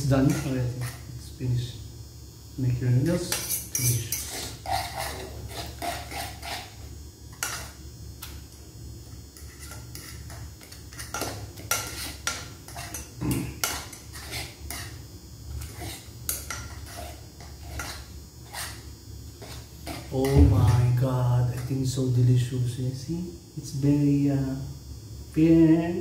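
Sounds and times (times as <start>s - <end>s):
steady low hum: 0.0s - 26.0s
utensil scraping cookware: 3.3s - 7.7s, 9.4s - 18.8s.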